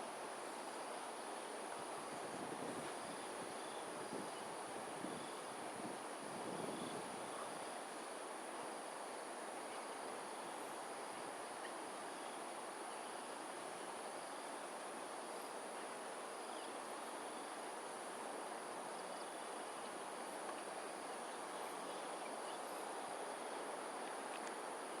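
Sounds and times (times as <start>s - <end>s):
crickets trilling: 0.4s - 5.6s, 6.2s - 8.1s, 13.9s - 25.0s.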